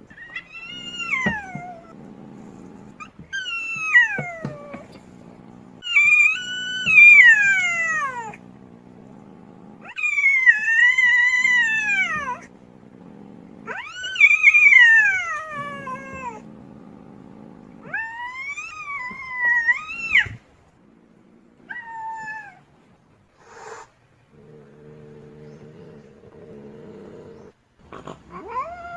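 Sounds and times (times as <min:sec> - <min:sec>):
cat yowling: 0:00.1 - 0:02.0, 0:03.3 - 0:05.0, 0:05.8 - 0:08.4, 0:09.8 - 0:12.5, 0:13.6 - 0:16.4, 0:17.8 - 0:20.4, 0:21.7 - 0:22.6, 0:28.3 - 0:28.9.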